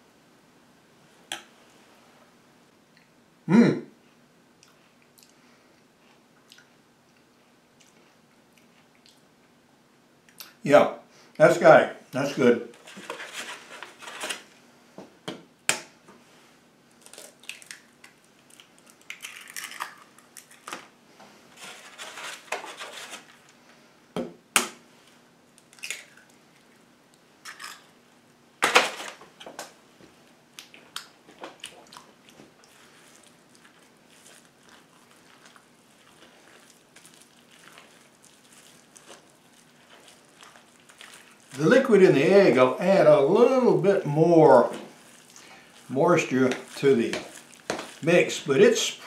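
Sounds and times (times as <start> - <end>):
wet squishing: 16.9 - 20.7, 30.6 - 42.0, 44.5 - 48.6.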